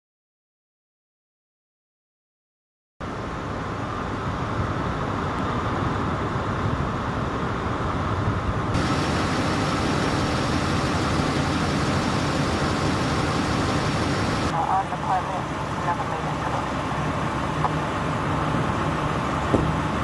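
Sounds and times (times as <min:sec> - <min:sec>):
bright hiss: 0:08.8 - 0:14.5
vehicle engines idling: 0:08.8 - 0:20.0.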